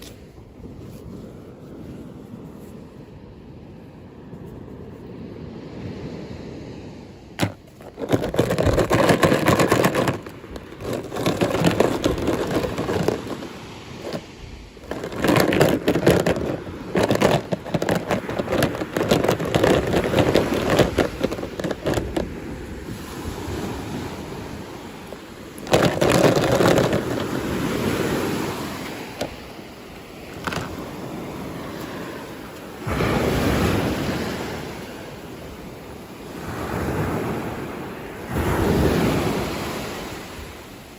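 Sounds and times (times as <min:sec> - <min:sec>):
sharp clicks and crackles: 0:07.4 - 0:14.2, 0:14.8 - 0:22.3, 0:25.6 - 0:27.4.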